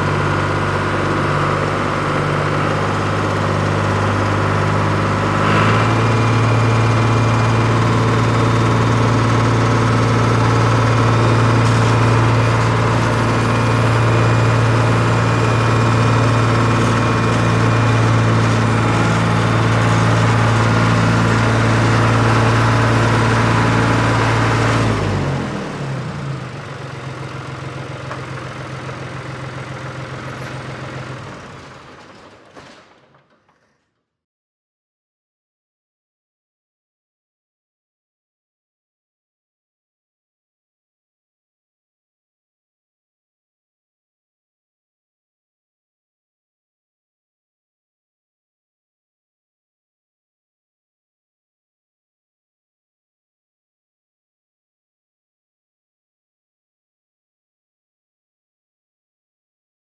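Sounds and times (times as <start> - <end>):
harvester engine running: 0.0 - 32.5.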